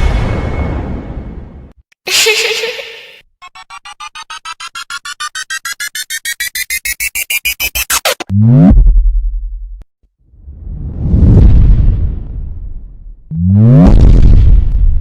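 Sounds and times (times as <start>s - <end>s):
rising pulsing beep: 3.5s - 8.2s
deep bass drop: 8.3s - 9.8s, 10.4s - 15.0s.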